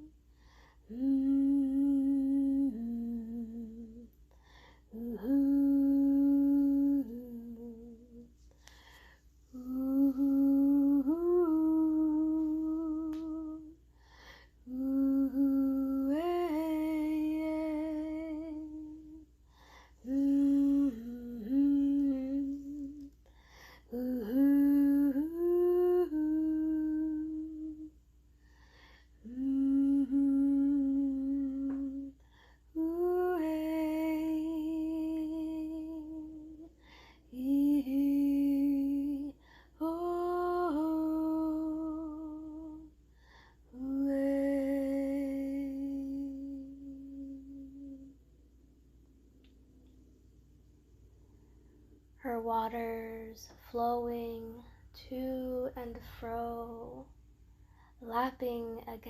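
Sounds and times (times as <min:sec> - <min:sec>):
person humming: 0:04.9 - 0:08.3, 0:09.5 - 0:13.8, 0:14.6 - 0:19.2, 0:20.0 - 0:23.2, 0:29.2 - 0:32.2, 0:43.7 - 0:48.2.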